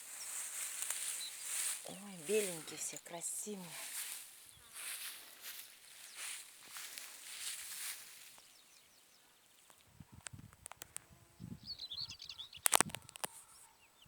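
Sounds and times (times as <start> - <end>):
rustling: 0.0 - 8.5
small birds chirping: 0.0 - 14.0.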